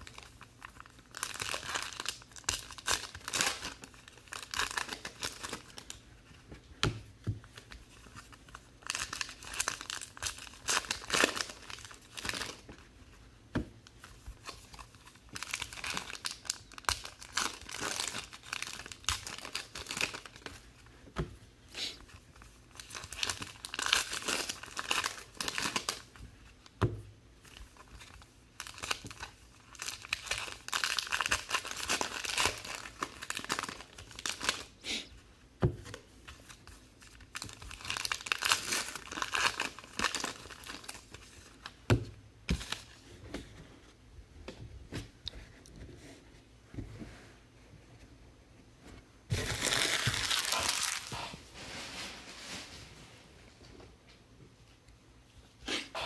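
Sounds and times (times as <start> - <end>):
foil wrappers tearing and crinkling: 0.0 - 6.0, 8.8 - 12.6, 14.4 - 20.5, 22.7 - 26.1, 27.8 - 34.8, 36.4 - 41.6, 49.3 - 51.2.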